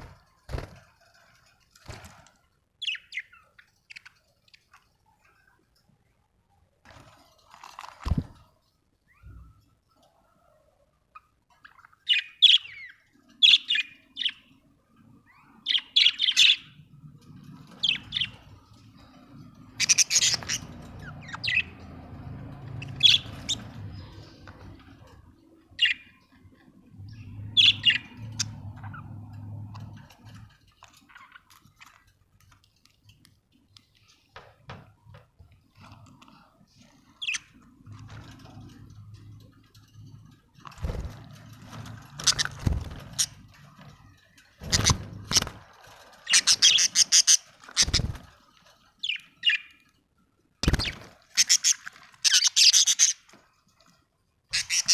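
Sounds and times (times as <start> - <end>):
budgerigars chirping and squawking: 2.8 - 4.7, 11.5 - 14.6, 15.2 - 26.4, 27.0 - 32.0, 37.1 - 37.6, 42.0 - 43.6, 44.5 - 48.3, 49.0 - 49.8, 50.6 - 53.3, 54.5 - 54.9.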